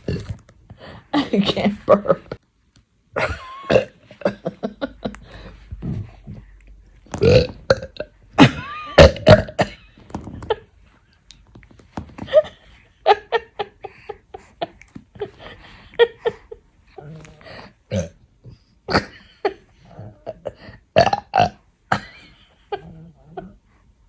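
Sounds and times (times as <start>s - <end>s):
woman burping loudly: 3.2s - 4.5s, 7.2s - 9.8s, 17.9s - 18.2s, 18.9s - 19.2s, 19.9s - 22.1s.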